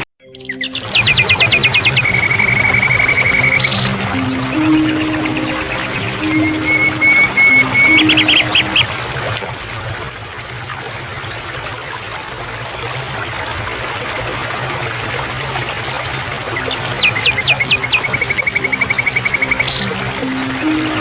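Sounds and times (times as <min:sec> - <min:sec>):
birds chirping: 0:00.2 - 0:09.1, 0:16.4 - 0:21.0
stream water flowing: 0:00.8 - 0:21.0.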